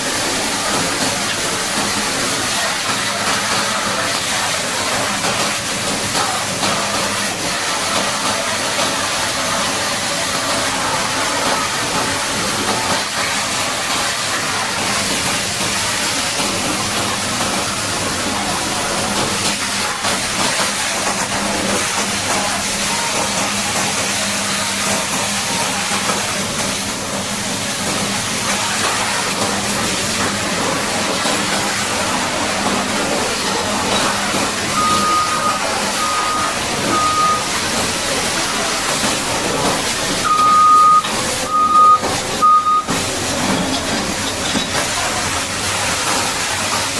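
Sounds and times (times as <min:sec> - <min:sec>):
high-pressure water jet hissing: 0:00.0 - 0:46.9
reversing alarm beeps: 0:34.7 - 0:37.5, 0:40.2 - 0:42.9.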